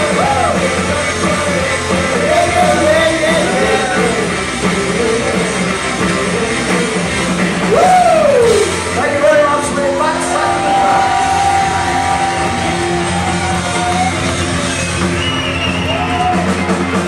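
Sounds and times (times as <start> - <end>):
person singing: 0.0 - 13.2
live rock band playing: 0.0 - 17.0.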